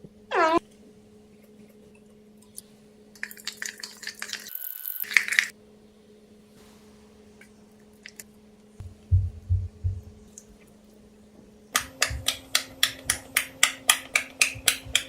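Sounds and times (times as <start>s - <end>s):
faint steady hum: 5.0s - 15.0s.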